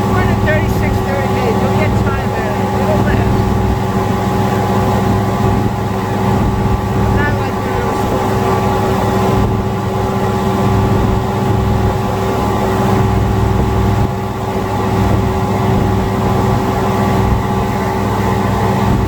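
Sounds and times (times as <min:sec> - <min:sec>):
outboard engine running: 0:00.0 - 0:19.0.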